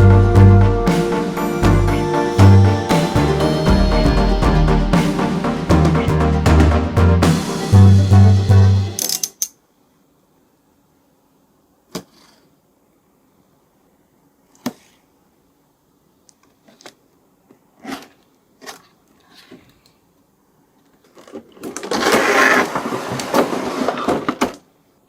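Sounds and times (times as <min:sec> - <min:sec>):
background music: 0:00.0 - 0:09.2
plastic toy and packaging handled: 0:20.8 - 0:24.6.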